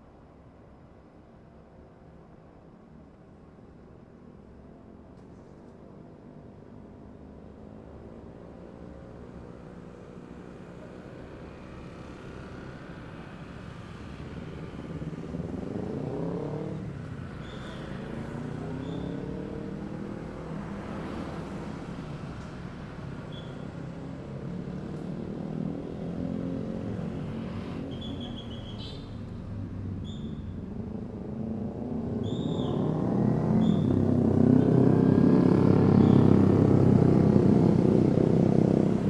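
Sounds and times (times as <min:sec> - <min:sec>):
cars and motorbikes passing: 0:11.0 - 0:39.0.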